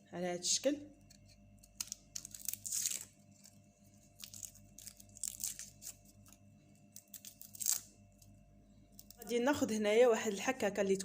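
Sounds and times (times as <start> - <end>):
garlic skin tearing and crackling: 1.0 - 9.4.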